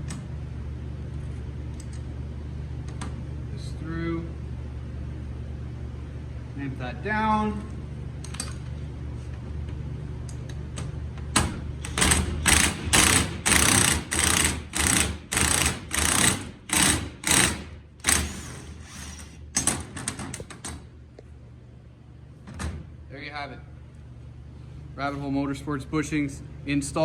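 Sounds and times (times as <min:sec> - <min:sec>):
hand ratchet clicking: 0:11.9 - 0:18.4.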